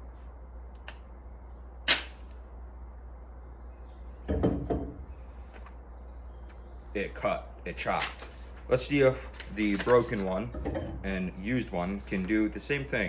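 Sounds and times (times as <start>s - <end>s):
dull handling sounds: 7.9s - 10.8s.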